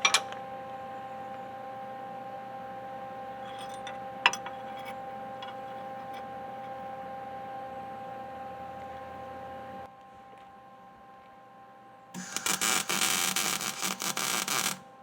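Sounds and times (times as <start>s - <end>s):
steady hum: 12.2s - 15.0s.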